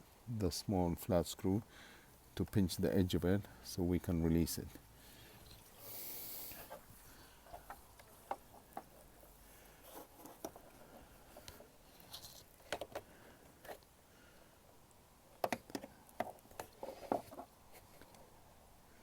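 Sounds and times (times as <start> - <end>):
short hiss: 5.8 - 6.9.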